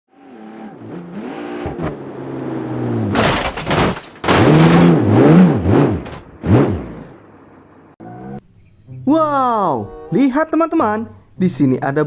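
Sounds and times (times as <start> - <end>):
car engine revving: 0.1 - 8.9.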